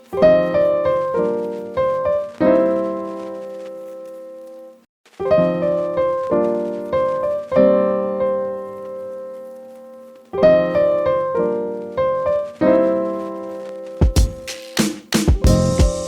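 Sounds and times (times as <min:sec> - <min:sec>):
piano chords ringing: 0:05.2 - 0:14.4, 0:15.4 - 0:16.0.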